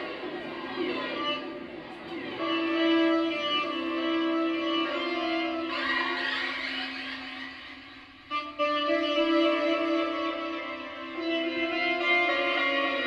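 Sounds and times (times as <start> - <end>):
tenor saxophone improvising: 8.3 - 13.0.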